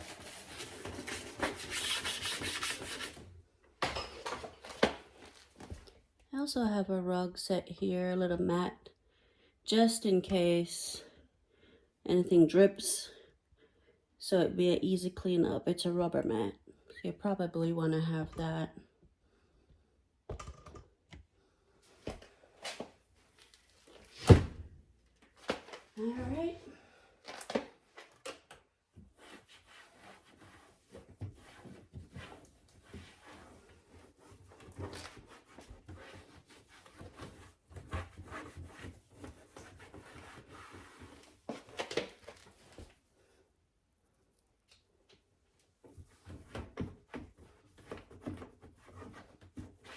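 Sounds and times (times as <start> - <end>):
rubbing and wiping: 0.0 - 3.2, 29.0 - 41.8.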